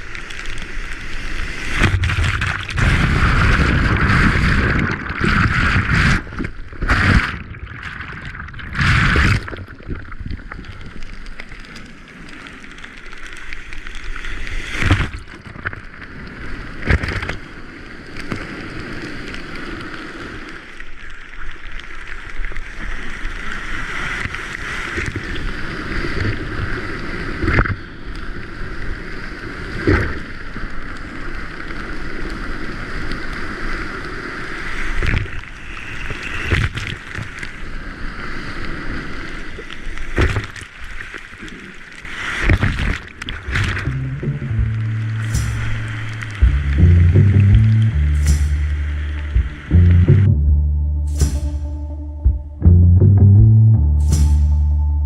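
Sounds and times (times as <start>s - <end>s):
sharp water splashes: 0.0s - 10.0s, 42.0s - 49.9s
ocean surf and rushing water: 0.0s - 49.9s.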